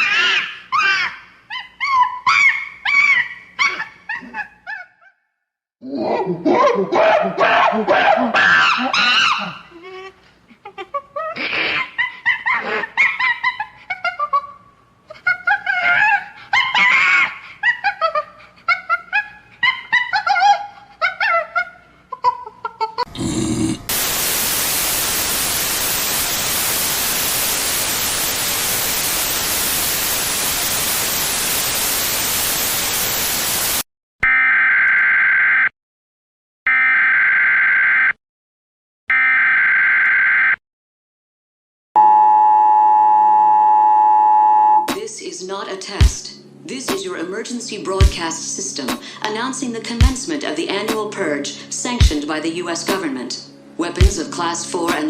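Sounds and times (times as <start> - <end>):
pitch-bending animal-like cries: 0.0 - 5.3, 7.5 - 9.8
harsh static noise: 23.2 - 33.9.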